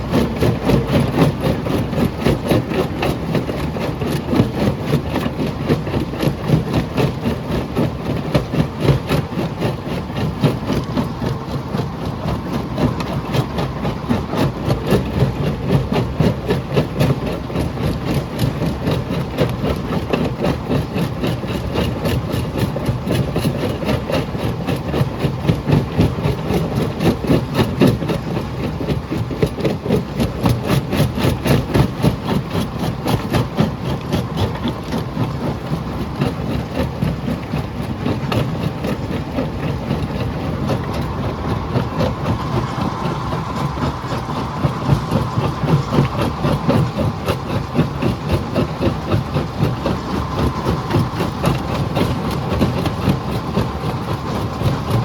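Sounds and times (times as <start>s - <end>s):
jaw crusher rumbling: 29.9s - 55.0s
faint higher hum: 40.0s - 53.6s.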